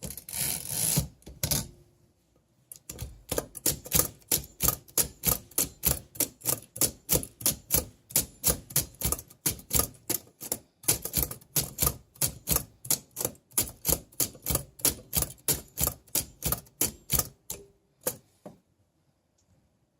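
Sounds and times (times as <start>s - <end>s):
typewriter keys clacking: 2.7s - 18.2s.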